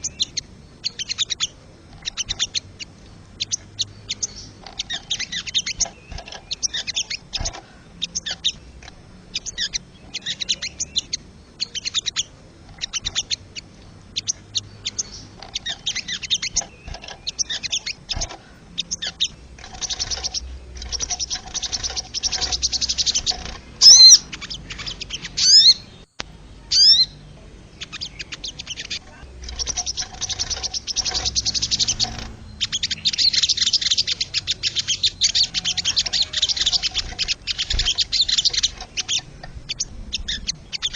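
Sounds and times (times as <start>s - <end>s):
birds chirping in rattling trains: 0.0s - 40.9s.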